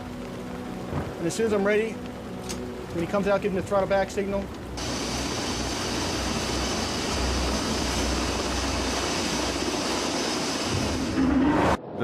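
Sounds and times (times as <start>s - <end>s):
jet engine running: 4.8s - 11.8s.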